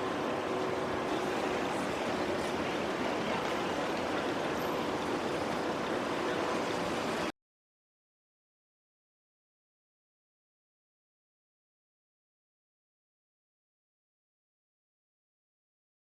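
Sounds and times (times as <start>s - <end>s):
steady rushing noise: 0.0s - 7.3s.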